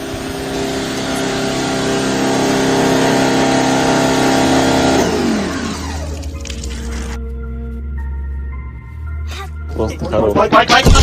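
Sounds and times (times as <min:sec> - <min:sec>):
chainsaw engine at high revs: 0:00.0 - 0:06.3.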